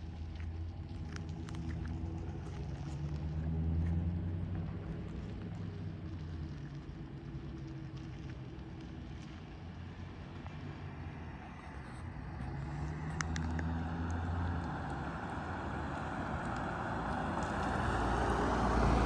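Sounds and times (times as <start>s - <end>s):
road noise: 0.0s - 19.0s
vehicle engine humming: 0.0s - 19.0s.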